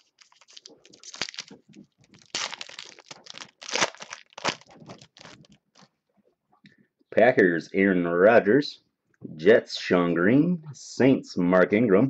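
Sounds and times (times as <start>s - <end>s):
wrapper tearing and crinkling: 0.0s - 5.9s.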